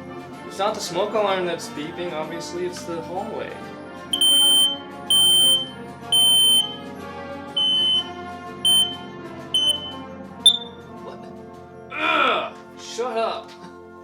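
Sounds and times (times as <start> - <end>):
background music: 0.0 - 14.0
smoke alarm beeping: 4.2 - 6.8, 7.6 - 8.1, 8.7 - 9.0, 9.6 - 10.7
smoke alarm chirp: 4.2 - 6.8, 7.6 - 8.1, 8.7 - 9.0, 9.6 - 10.8.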